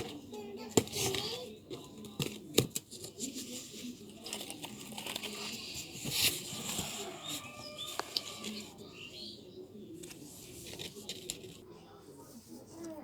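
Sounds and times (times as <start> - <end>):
packaging crinkling and rustling: 2.0 - 8.7.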